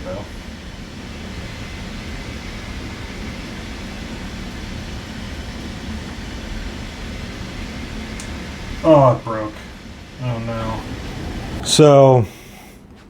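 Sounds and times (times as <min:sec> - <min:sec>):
cooling fans: 0:00.0 - 0:13.0.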